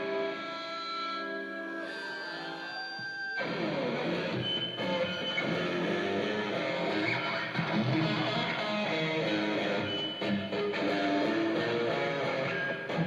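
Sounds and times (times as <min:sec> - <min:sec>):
guitar: 0:00.0 - 0:13.0
rock band playing: 0:03.4 - 0:13.0.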